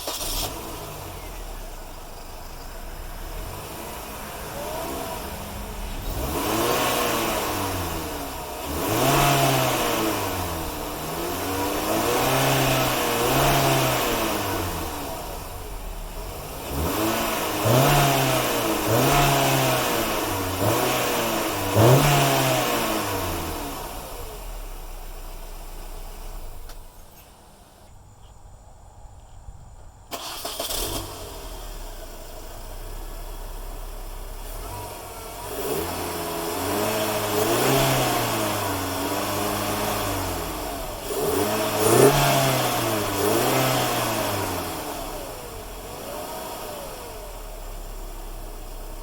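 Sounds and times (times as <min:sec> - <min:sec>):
engine starting burst: 0:00.0 - 0:27.9, 0:30.0 - 0:35.1
car engine running: 0:00.0 - 0:49.0.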